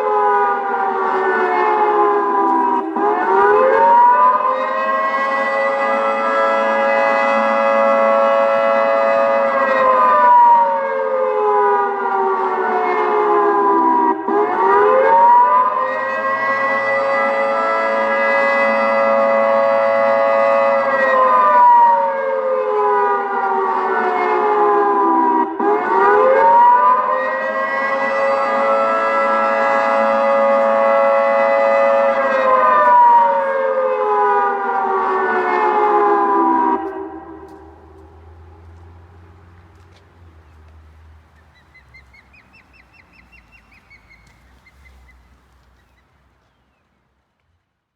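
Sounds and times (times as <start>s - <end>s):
electronic two-tone siren: 0.0s - 39.3s
steady low rumble: 36.6s - 45.7s
osprey whistled alarm calls: 41.4s - 46.8s.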